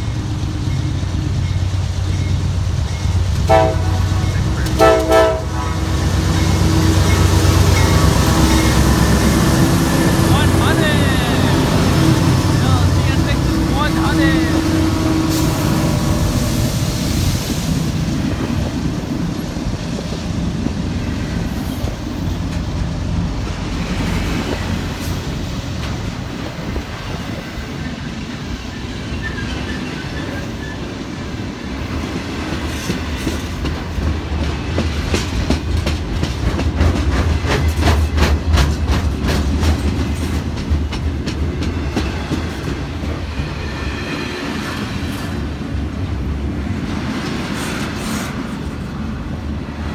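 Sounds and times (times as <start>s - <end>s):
train cars rumbling past: 0.0s - 49.9s
wheels clicking over rail joints: 32.6s - 43.3s.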